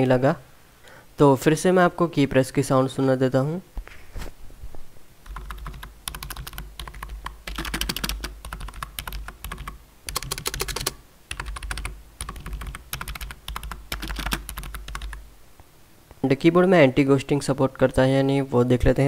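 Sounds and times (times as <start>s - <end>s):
keyboard typing: 5.2s - 15.2s.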